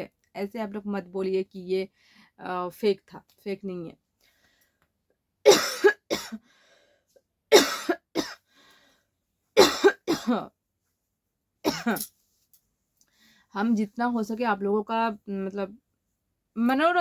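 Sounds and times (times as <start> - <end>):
person coughing: 5.5 - 6.4, 7.5 - 8.4, 9.6 - 10.5, 11.7 - 12.1.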